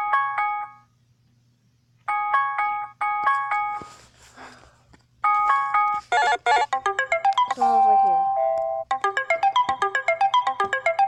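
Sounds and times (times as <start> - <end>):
chiming electronic ringtone: 5.3 - 11.0.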